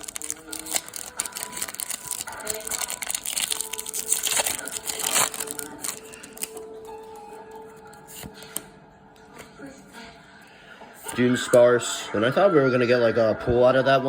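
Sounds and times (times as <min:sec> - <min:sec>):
foil wrapper crinkling and tearing: 0:00.0 - 0:06.7.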